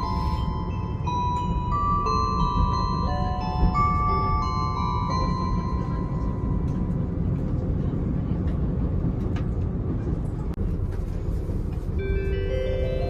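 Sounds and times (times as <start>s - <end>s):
onboard chime: 0.0s - 6.9s
diesel railcar low rumble: 0.0s - 13.0s.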